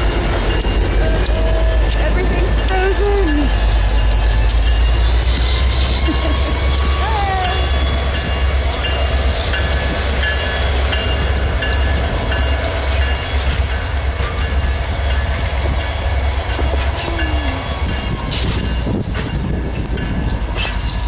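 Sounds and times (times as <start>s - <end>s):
train rumbling past: 0.0s - 21.0s
high-pitched squeals: 3.3s - 14.0s, 14.6s - 21.0s.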